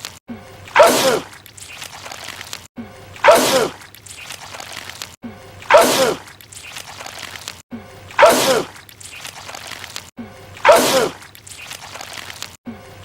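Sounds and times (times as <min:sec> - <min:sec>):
man sneezing: 0:00.8 - 0:01.3, 0:03.2 - 0:03.8, 0:05.7 - 0:06.2, 0:08.2 - 0:08.7, 0:10.6 - 0:11.2.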